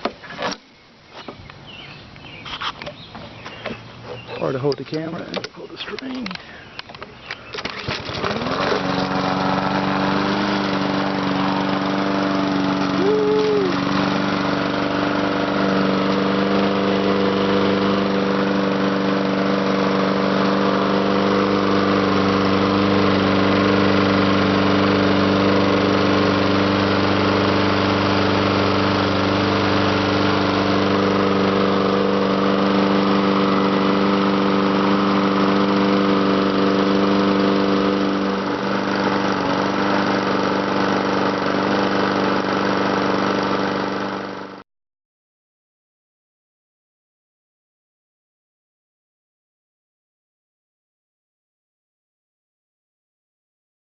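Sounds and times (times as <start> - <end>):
lawn mower engine running: 1.2 - 44.6.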